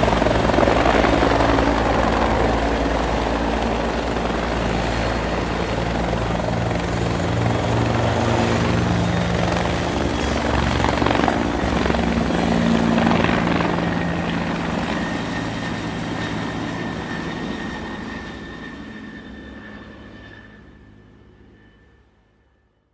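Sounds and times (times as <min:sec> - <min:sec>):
helicopter turbine and rotor: 0:00.0 - 0:22.9.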